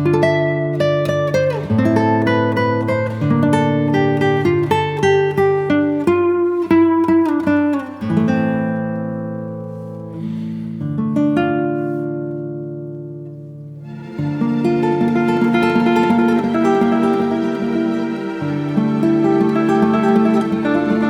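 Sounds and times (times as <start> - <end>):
acoustic guitar melody: 0.0 - 21.0.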